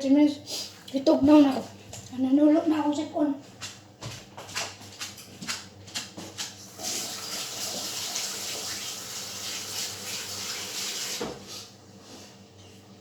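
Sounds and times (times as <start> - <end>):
tap running into a sink: 6.8 - 11.5.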